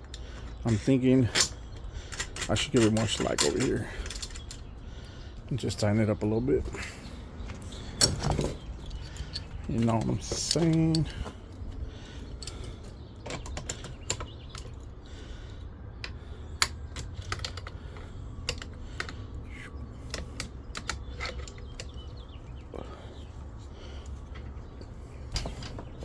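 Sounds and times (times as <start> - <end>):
metal hardware clicking: 0.0 - 4.6, 7.5 - 14.9, 16.0 - 19.2, 20.0 - 22.2.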